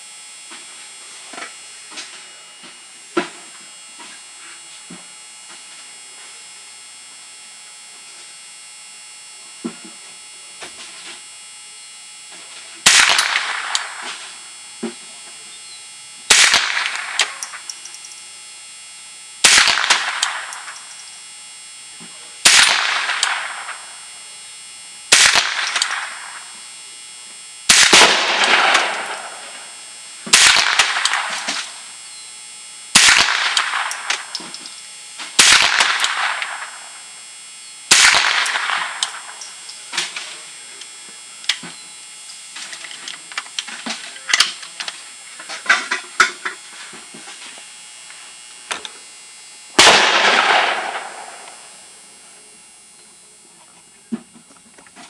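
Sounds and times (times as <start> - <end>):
rifle shots: 12.8 - 14.2, 16.3 - 17.8, 19.4 - 20.9, 22.4 - 24.0, 25.1 - 26.5, 27.7 - 31.8, 32.9 - 34.6, 35.4 - 37.0, 37.9 - 39.7, 49.8 - 51.8.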